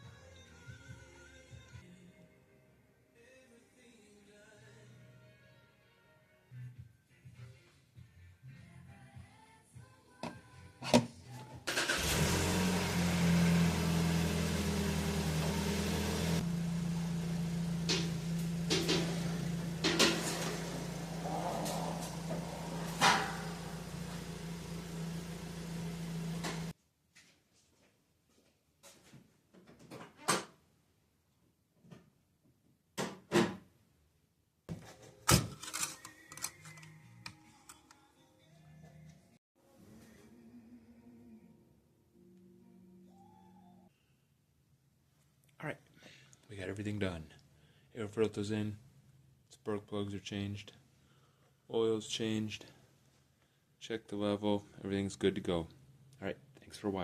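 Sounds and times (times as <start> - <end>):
car engine starting and idling: 11.7 - 26.7.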